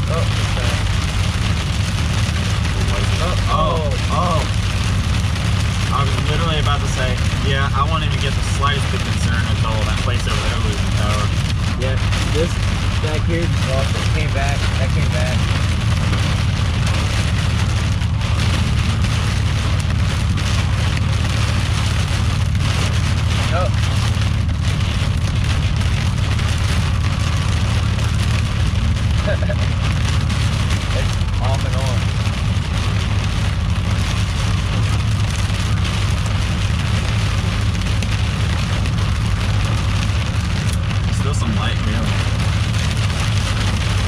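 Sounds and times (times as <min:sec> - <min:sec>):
rain and hail on a truck: 0:00.0 - 0:44.0
truck low rumble: 0:00.0 - 0:44.0.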